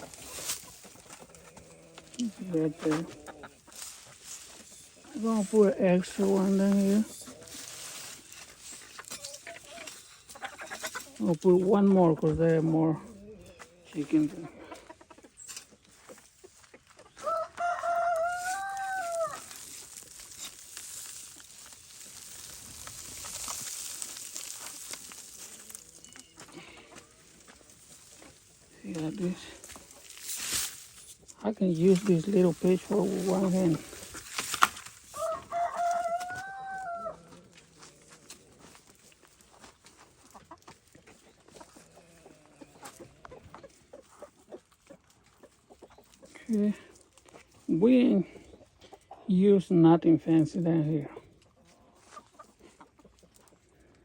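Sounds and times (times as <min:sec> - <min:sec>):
chickens clucking softly: 0:00.0 - 0:04.0, 0:13.0 - 0:20.1, 0:35.2 - 0:47.5, 0:48.1 - 0:49.6, 0:51.1 - 0:54.0
soft crackly rustle: 0:00.0 - 0:13.1, 0:13.8 - 0:49.1
rooster crowing: 0:17.2 - 0:19.5, 0:35.1 - 0:37.4.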